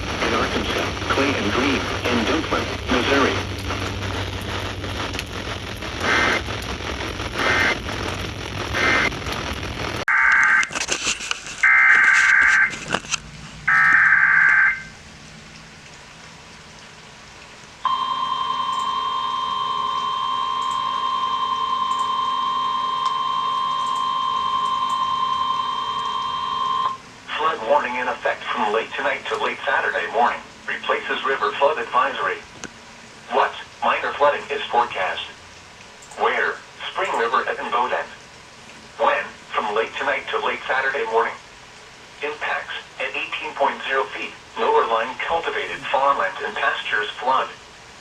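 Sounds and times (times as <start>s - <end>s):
steady alarm tone: 0.0s - 10.6s, 17.9s - 27.0s
warbling data bursts: 0.0s - 10.6s
radio static and hiss: 0.0s - 14.8s, 26.4s - 35.4s, 36.1s - 38.2s, 38.9s - 41.5s, 42.1s - 47.7s.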